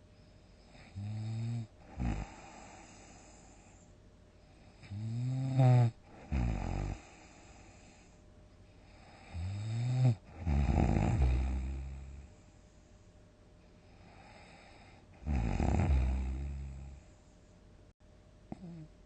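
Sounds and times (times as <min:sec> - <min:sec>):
person snoring loudly: 0:00.8 - 0:03.0, 0:04.8 - 0:07.3, 0:09.1 - 0:12.2, 0:15.2 - 0:17.0.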